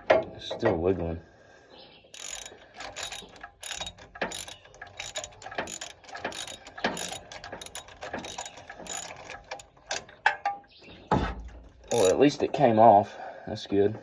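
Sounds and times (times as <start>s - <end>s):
ratchet wrench clicking: 2.2s - 9.7s, 11.9s - 12.2s.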